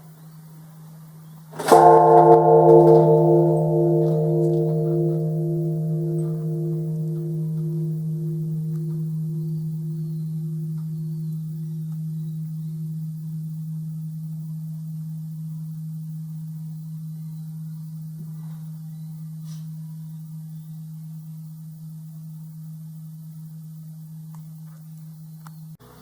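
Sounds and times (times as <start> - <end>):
temple bell ringing: 1.6 - 12.2.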